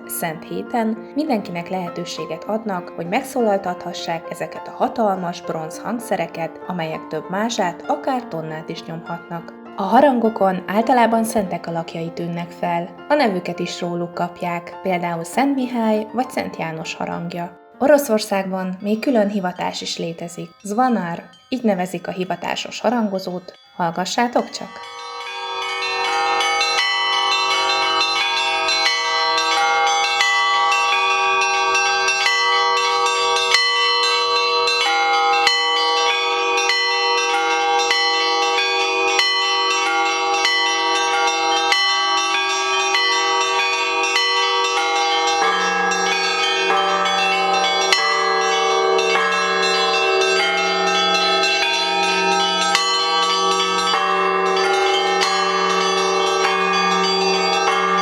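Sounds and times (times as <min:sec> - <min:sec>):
church bells pealing: 0:00.0 - 0:58.0
deep bell ringing: 0:24.2 - 0:58.0.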